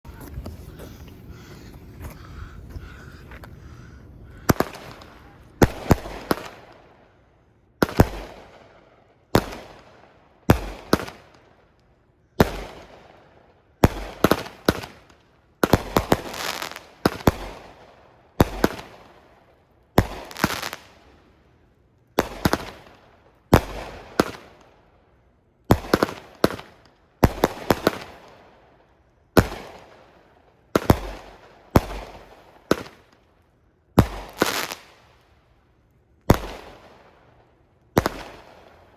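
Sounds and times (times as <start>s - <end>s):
fireworks bangs: 4.4s - 6.9s, 7.8s - 8.6s, 20.0s - 21.0s, 25.7s - 28.5s, 29.4s - 30.2s, 30.8s - 33.2s, 34.0s - 35.1s, 36.3s - 37.3s, 37.9s - 38.9s.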